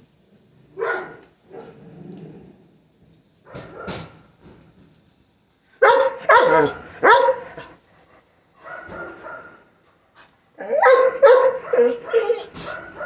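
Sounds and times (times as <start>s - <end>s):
dogs barking: 0.8s - 1.3s, 3.5s - 4.2s, 5.8s - 7.8s, 8.6s - 9.7s, 10.6s - 13.0s
dogs yelping: 5.8s - 7.8s, 10.6s - 13.0s.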